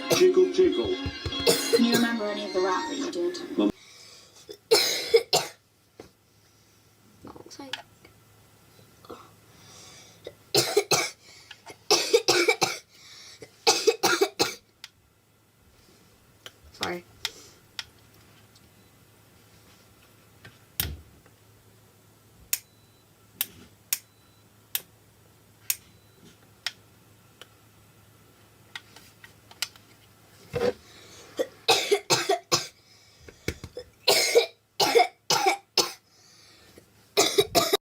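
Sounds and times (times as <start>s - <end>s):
young woman coughing: 1.4s - 2.1s, 4.5s - 5.6s, 10.3s - 12.9s, 13.7s - 14.6s, 31.4s - 32.8s, 33.8s - 36.0s, 37.2s - 37.8s.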